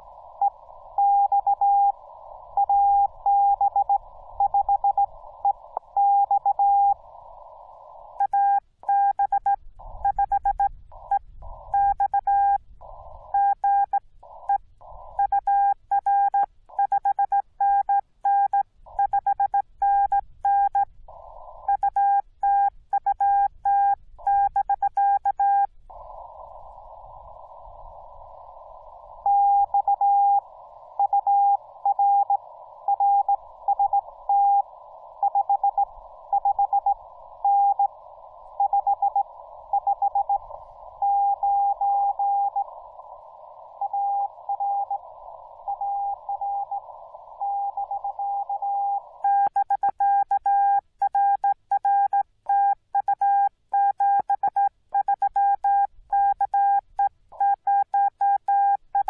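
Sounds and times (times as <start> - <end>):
radio hiss: 0.0 - 8.9, 9.7 - 15.9, 18.8 - 22.9, 25.4 - 49.4.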